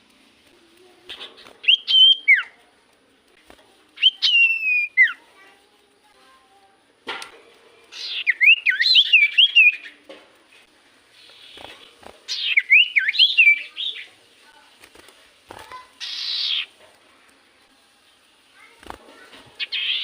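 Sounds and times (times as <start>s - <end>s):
bird whistled song: 1.2s - 2.6s, 4.0s - 5.2s, 7.9s - 10.0s, 12.3s - 14.1s, 16.0s - 16.7s, 19.6s - 20.0s.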